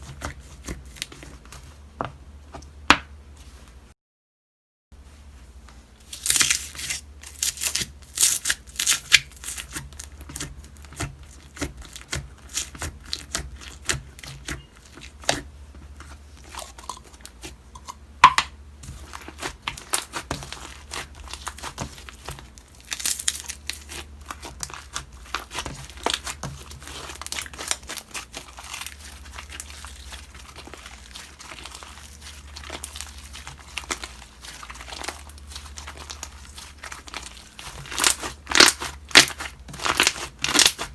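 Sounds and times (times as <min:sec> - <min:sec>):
slime squished by hand: 0:19.0 - 0:40.9.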